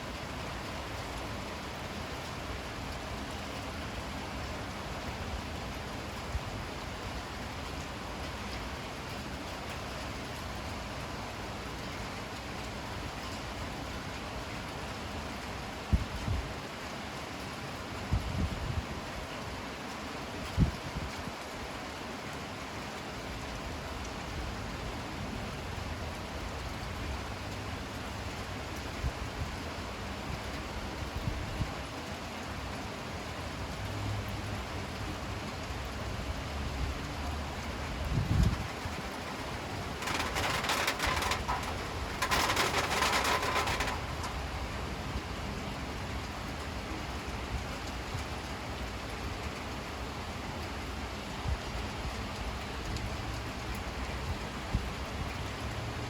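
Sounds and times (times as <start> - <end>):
steady rain falling: 0.0 - 56.0
hissing crackling noise: 37.6 - 45.5.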